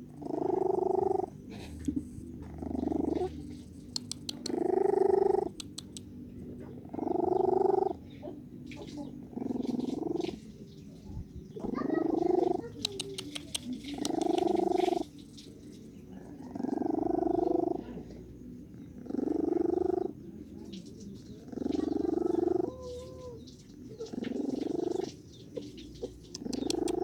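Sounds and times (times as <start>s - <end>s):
cat snoring: 0.0s - 3.6s, 4.2s - 5.6s, 6.8s - 8.0s, 16.4s - 18.1s, 19.0s - 20.2s, 21.4s - 23.0s.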